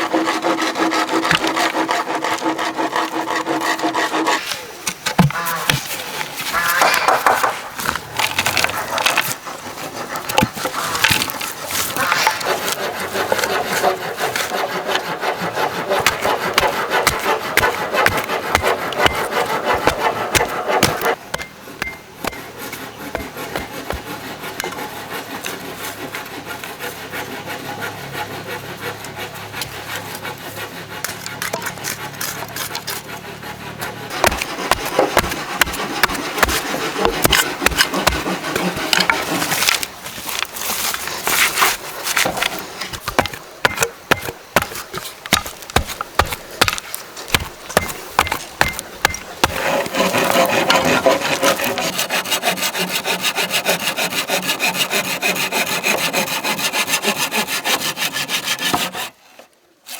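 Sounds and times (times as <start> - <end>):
hand tool rasping bamboo: 0.0 - 59.9
sharp knocks: 6.6 - 7.7, 43.1 - 49.6.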